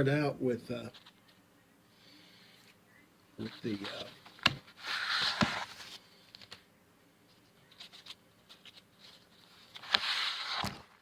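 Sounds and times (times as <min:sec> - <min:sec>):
rustling: 0:03.4 - 0:06.6, 0:07.2 - 0:11.0.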